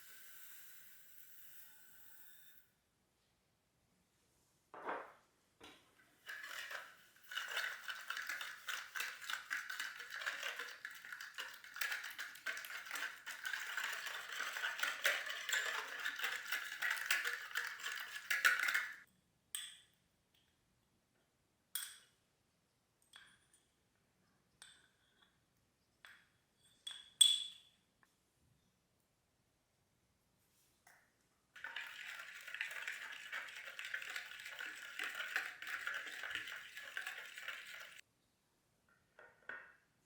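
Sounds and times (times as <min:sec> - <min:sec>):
whisk clinking in a bowl: 0:06.3 - 0:19.0, 0:31.6 - 0:38.0.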